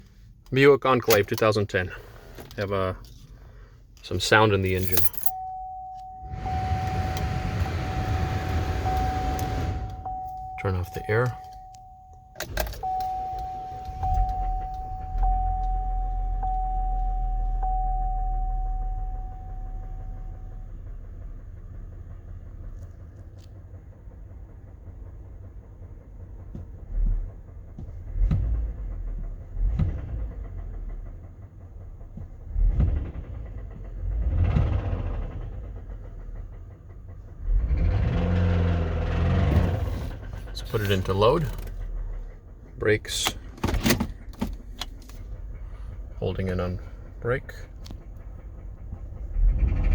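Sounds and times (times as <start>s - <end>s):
beeping chime: 5.0s - 6.7s, 10.0s - 20.4s
knocking engine revving: 6.2s - 11.4s, 18.8s - 43.2s, 44.2s - 49.9s.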